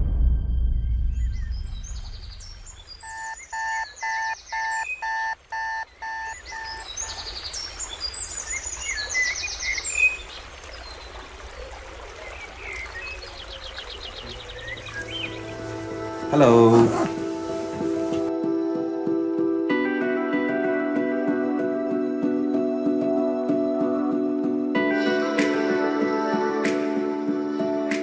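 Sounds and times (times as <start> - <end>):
repeated steady-pitched bird notes: 1.1 - 9.8
birds chirping and trilling: 1.1 - 18.3.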